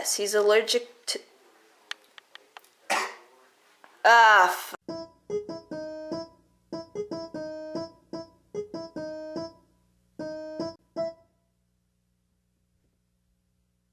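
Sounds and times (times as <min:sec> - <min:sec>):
clipped piano-like keyboard notes: 0:04.9 - 0:09.6, 0:10.2 - 0:11.3.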